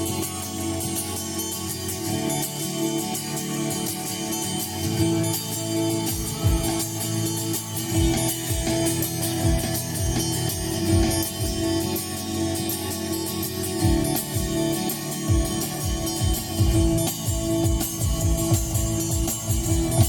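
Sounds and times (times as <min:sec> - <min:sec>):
live guitar music: 0:00.0 - 0:20.0
low beat: 0:04.8 - 0:12.6, 0:13.6 - 0:20.0.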